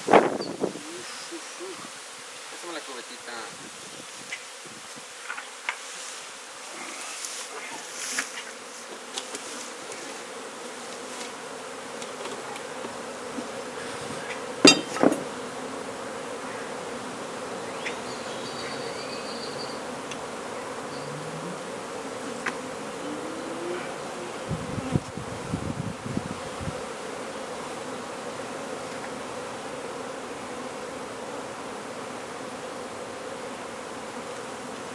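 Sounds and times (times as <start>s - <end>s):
bees buzzing: 0.0s - 4.6s, 6.6s - 34.9s
sharp knocks: 14.6s - 15.4s.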